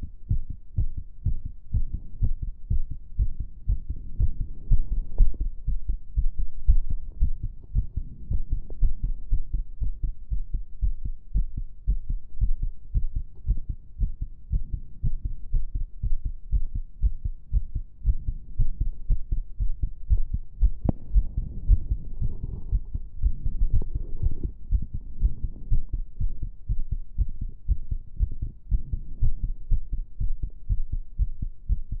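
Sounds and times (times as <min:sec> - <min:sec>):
heartbeat thumping: 0:00.0 - 0:32.0
scratchy noise: 0:21.0 - 0:25.7.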